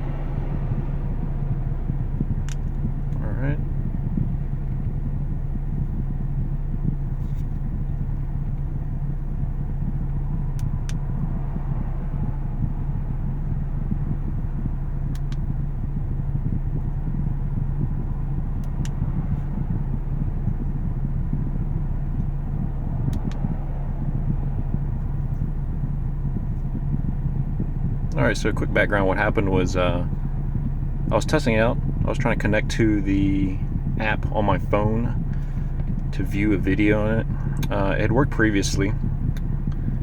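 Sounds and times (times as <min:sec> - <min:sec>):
low hum and rumble: 0:00.0 - 0:40.0.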